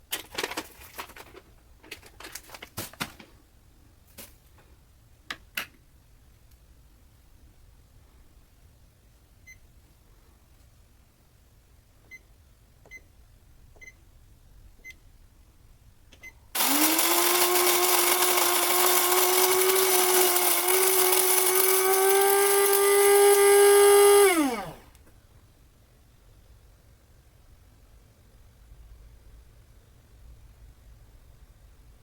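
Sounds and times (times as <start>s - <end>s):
coffee mill motor running: 16.6s - 24.8s.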